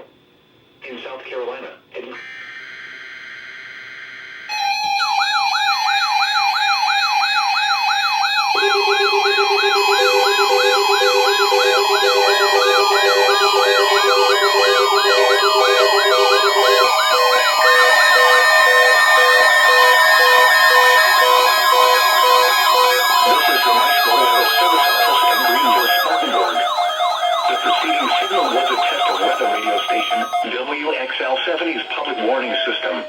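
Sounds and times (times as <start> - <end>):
warbling siren: 2.4 - 30.5, 31.8 - 33.0
electronic beeps: 8.3 - 30.5.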